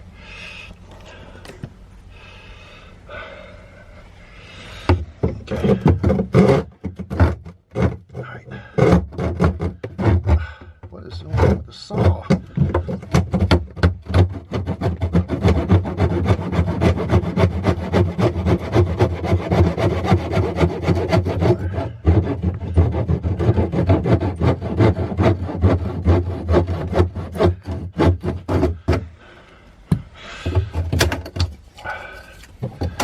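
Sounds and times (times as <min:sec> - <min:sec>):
reciprocating saw cutting pipe: 0:05.3 - 0:29.0.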